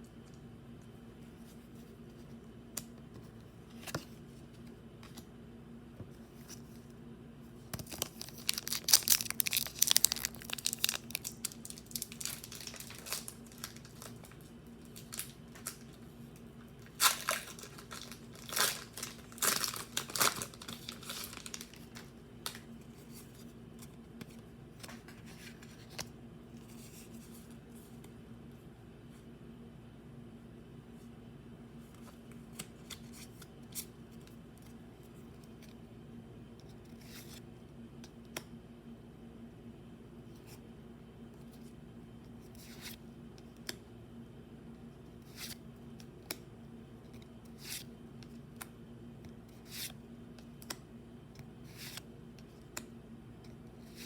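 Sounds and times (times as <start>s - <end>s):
steady low hum: 0.0s - 54.0s
foil wrappers tearing and crinkling: 7.8s - 16.0s, 16.8s - 22.6s.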